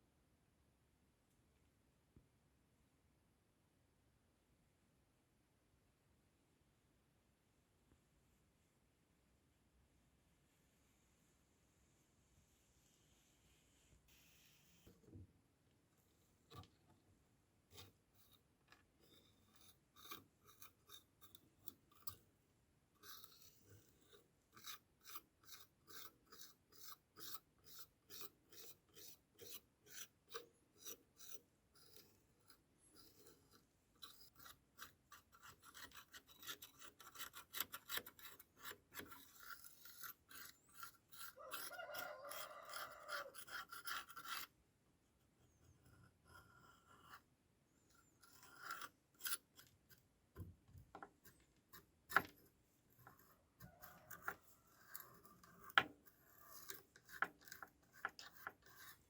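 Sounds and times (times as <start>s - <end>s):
scraping rust from knife blade: 17.7s - 22.2s, 23.0s - 44.6s, 48.0s - 50.1s, 51.0s - 59.0s.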